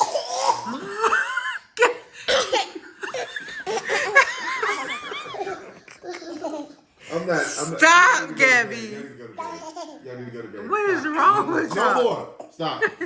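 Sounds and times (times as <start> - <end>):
toddlers giggling and laughing: 0.0 - 7.1, 9.4 - 10.1.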